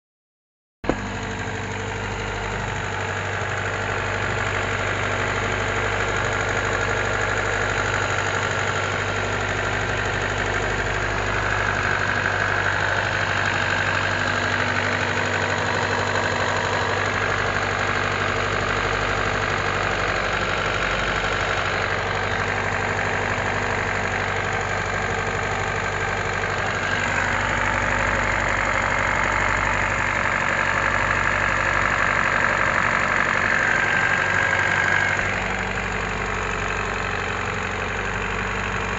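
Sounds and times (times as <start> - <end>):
car engine idling with a knock: 0.8 - 4.0, 7.5 - 19.4.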